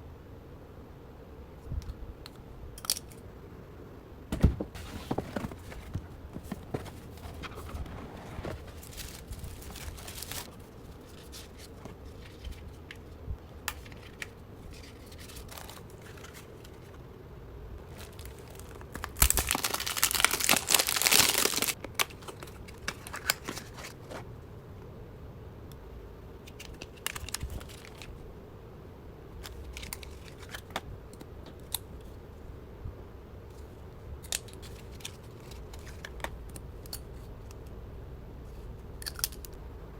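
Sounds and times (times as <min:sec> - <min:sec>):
wrapping tearing and crinkling: 0:04.7 - 0:12.8, 0:13.8 - 0:17.0, 0:17.9 - 0:24.2, 0:26.6 - 0:28.1, 0:29.4 - 0:30.7.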